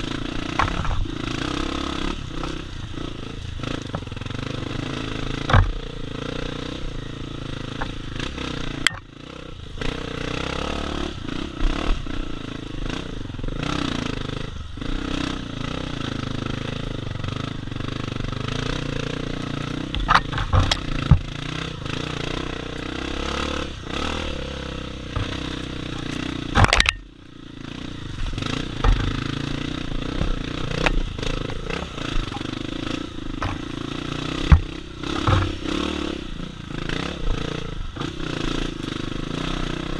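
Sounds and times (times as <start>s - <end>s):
dirt bike engine revving: 0.0s - 39.9s
bike clattering over rough ground: 0.4s - 2.6s, 3.6s - 6.3s, 18.8s - 27.1s, 28.1s - 36.1s.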